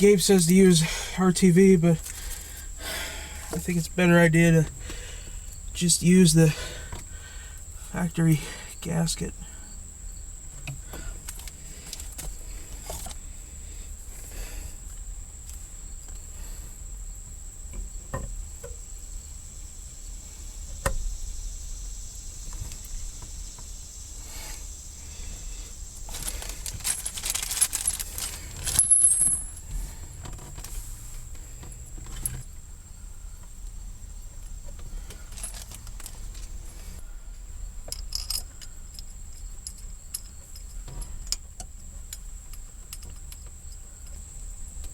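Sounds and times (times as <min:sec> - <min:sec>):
metallic clinks of small parts: 0:26.1 - 0:29.6, 0:35.3 - 0:36.4, 0:37.9 - 0:41.1.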